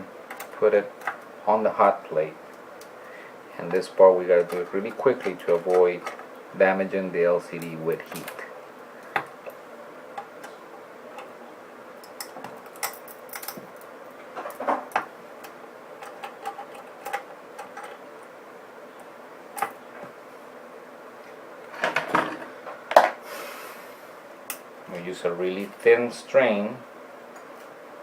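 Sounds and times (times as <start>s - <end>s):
tools clattering: 12.0s - 15.0s.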